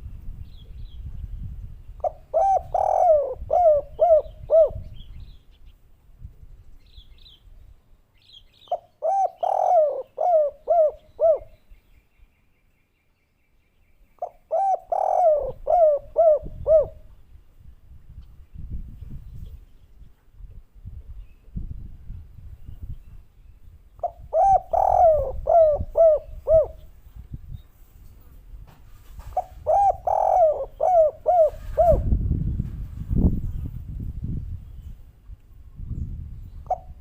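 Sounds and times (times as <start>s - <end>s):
dove cooing: 2.0s - 5.0s, 8.7s - 11.6s, 14.2s - 17.1s, 24.0s - 26.9s, 29.3s - 32.2s, 36.7s - 37.0s.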